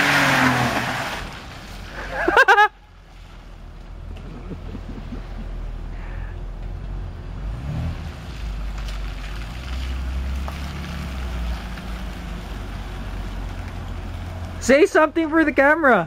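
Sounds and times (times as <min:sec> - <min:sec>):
tyres hissing on wet road: 0:00.0 - 0:03.7, 0:07.4 - 0:14.6
car engine droning: 0:00.0 - 0:15.8.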